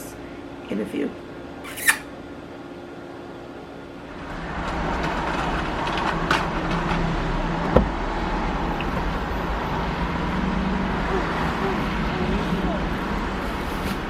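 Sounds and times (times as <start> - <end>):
car running: 4.1 - 13.5.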